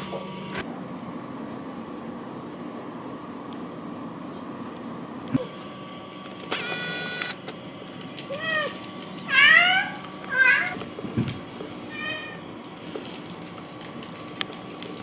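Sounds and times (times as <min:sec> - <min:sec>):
pet crying high-pitched: 0:08.3 - 0:10.8, 0:11.9 - 0:12.5.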